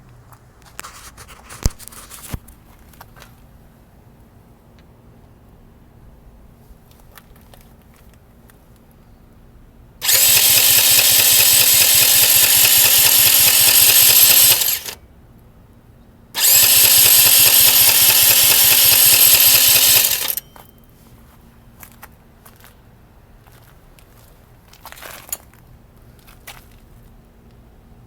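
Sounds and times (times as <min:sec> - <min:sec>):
electric starter whirring: 0:10.0 - 0:15.0, 0:16.4 - 0:20.5.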